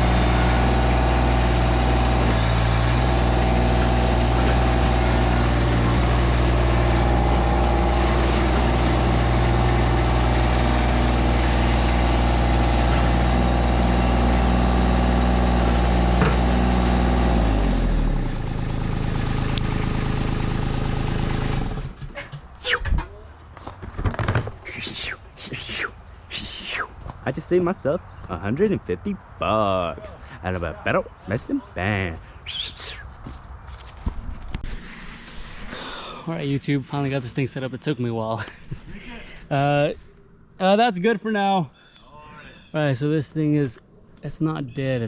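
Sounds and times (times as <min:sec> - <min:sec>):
small engine running: 0:00.0 - 0:22.0.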